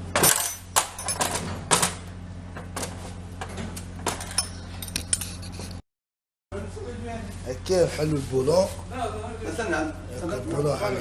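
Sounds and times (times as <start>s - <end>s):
steady low hum: 0.0s - 5.8s
tools clinking on metal: 4.2s - 5.4s.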